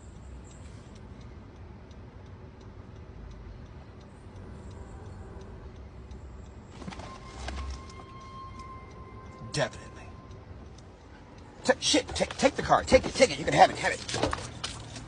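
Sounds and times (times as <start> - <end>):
faint regular ticking: 0.0 - 15.0
low steady background noise: 0.0 - 15.0.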